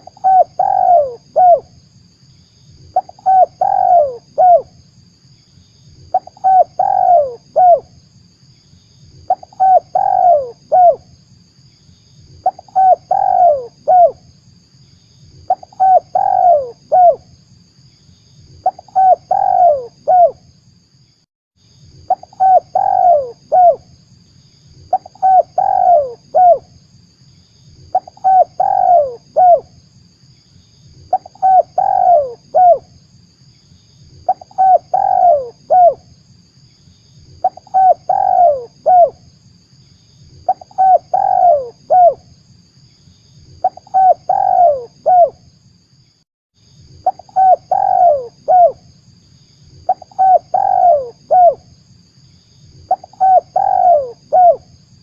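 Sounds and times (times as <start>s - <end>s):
dove cooing call: 0.0s - 1.7s, 2.9s - 4.8s, 6.1s - 7.9s, 9.3s - 11.1s, 12.4s - 14.2s, 15.5s - 17.2s, 18.6s - 20.4s, 22.1s - 23.9s, 24.9s - 26.7s, 27.9s - 29.7s, 31.1s - 32.9s, 34.2s - 36.1s, 37.4s - 39.2s, 40.4s - 42.3s, 43.6s - 45.4s, 47.0s - 48.9s, 49.8s - 51.7s, 52.9s - 54.7s.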